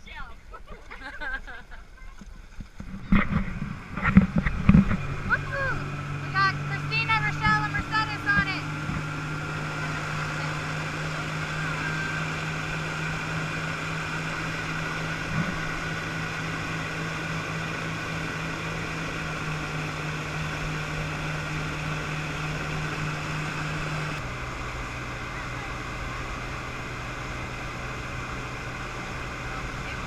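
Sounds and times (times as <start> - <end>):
motorboat engine running: 0.0 - 30.0
water noise: 0.0 - 30.0
rushing wind: 2.8 - 25.2.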